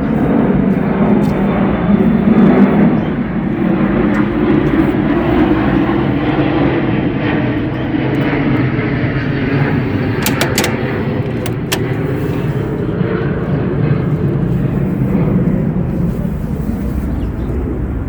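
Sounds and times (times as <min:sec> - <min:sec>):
airplane passing over: 0:00.0 - 0:18.0
sharp clicks: 0:10.2 - 0:12.1.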